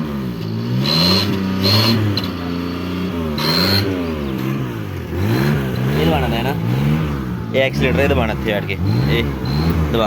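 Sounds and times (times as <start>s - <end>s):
car engine revving: 0.0s - 10.0s.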